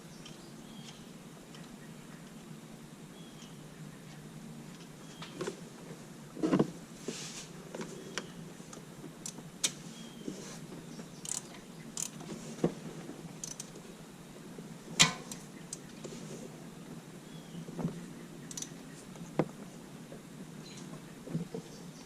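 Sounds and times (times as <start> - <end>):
low steady hum: 0.0 - 22.0
tools clicking and clinking: 11.2 - 12.2, 13.4 - 13.8.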